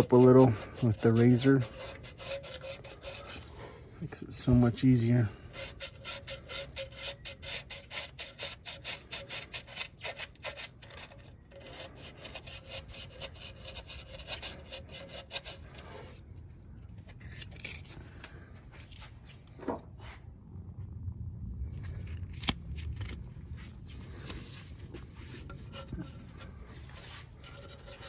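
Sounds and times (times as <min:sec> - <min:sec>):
rasping scraping of gasket surface: 0:00.0 - 0:03.8, 0:04.4 - 0:16.2, 0:23.9 - 0:28.0.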